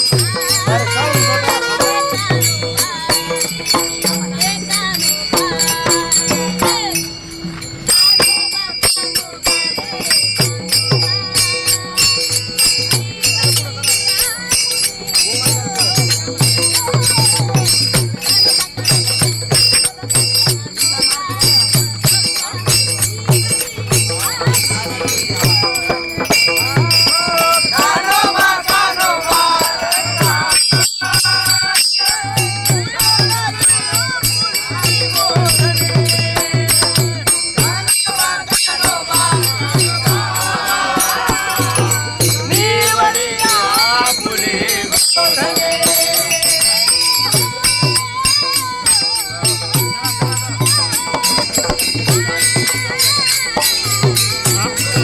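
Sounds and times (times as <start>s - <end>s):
hand cymbals clashing: 0.0s - 55.0s.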